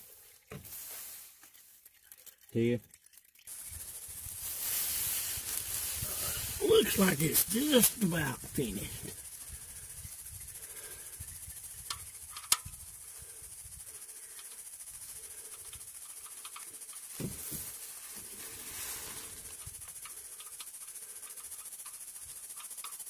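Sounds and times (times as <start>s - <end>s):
faint steady hiss: 0.0s - 2.8s, 3.5s - 23.0s
oil draining into bucket: 1.4s - 4.5s.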